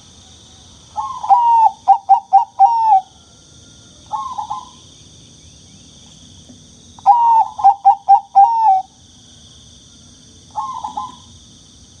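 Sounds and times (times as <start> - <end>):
steady high hiss: 0.0 - 2.7
dove cooing: 1.0 - 3.2, 4.1 - 4.8, 7.0 - 8.9, 10.5 - 11.3.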